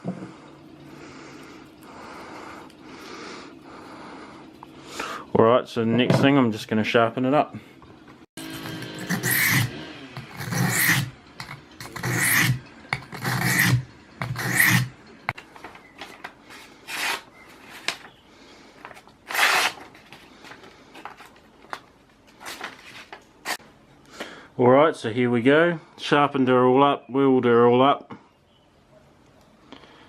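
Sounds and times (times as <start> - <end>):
knife blade scraping on sharpener: 8.5 - 15.0, 16.9 - 17.3.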